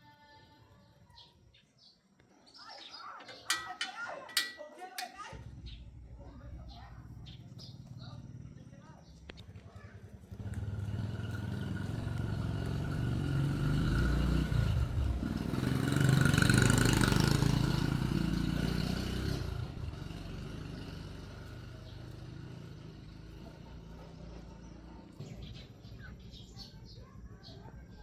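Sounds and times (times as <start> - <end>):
motor vehicle passing by: 10.0 - 26.7.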